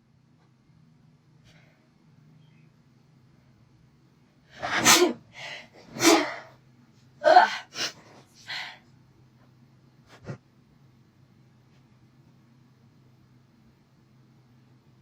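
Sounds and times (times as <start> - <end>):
person sneezing: 4.6 - 5.2, 5.9 - 6.5.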